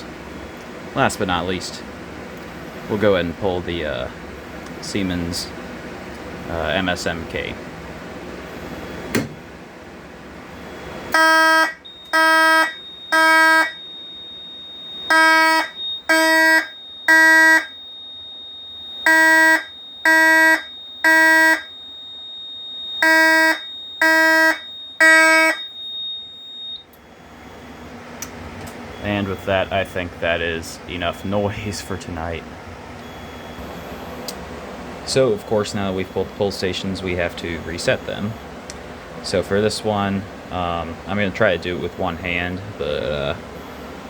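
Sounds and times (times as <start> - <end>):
fire alarm horn blasts: 10.5 - 28.0, 28.9 - 32.4, 35.0 - 38.5, 39.2 - 44.0
steady high-pitched tone: 28.9 - 38.6, 39.2 - 44.0.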